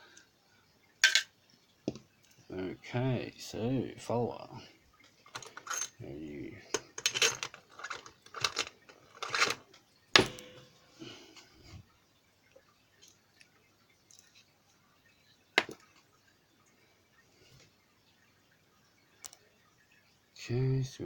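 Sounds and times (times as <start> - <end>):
padlock parts clicking and rattling: 5.3 - 6.0, 6.7 - 10.5.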